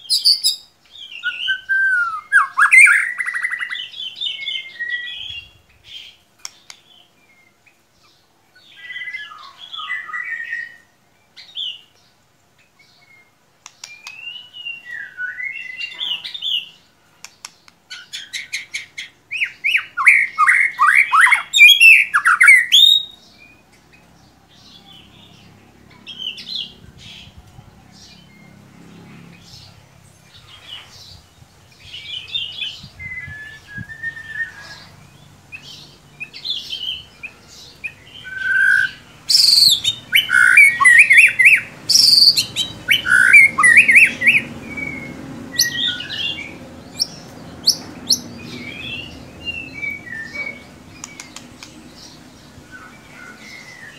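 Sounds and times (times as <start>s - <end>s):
songbird singing whistles and trills: 0.0s - 7.6s, 8.6s - 12.0s, 12.8s - 16.8s, 17.9s - 23.7s, 31.8s - 34.9s, 35.5s - 51.7s.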